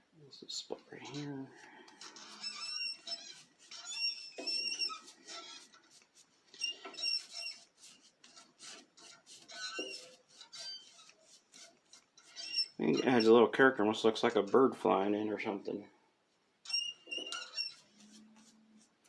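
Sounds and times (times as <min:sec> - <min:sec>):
rubbing strokes on wood: 0:02.0 - 0:13.3, 0:17.4 - 0:19.0
short high squeaks: 0:02.0 - 0:13.4, 0:16.6 - 0:18.6.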